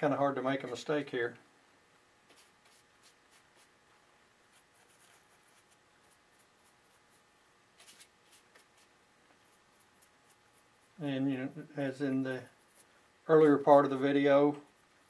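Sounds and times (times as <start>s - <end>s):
paintbrush scratchy ticks: 4.5s - 11.1s, 12.3s - 15.0s.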